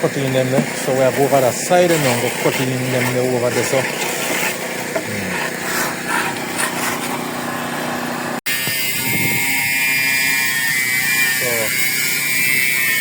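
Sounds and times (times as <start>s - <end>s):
power tool cutting tile: 0.0s - 13.0s
power tool high whine: 0.0s - 13.0s.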